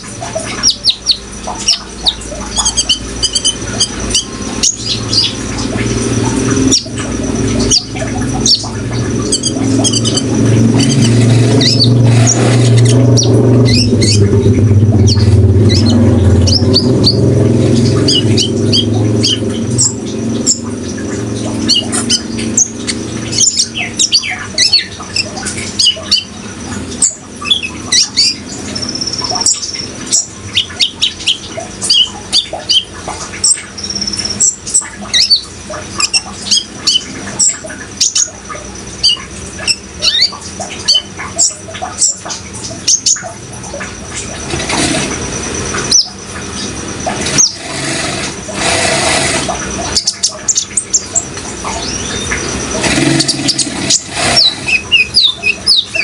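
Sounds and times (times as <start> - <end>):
bird chirps and trills: 0.0 - 56.0
rushing water: 0.0 - 56.0.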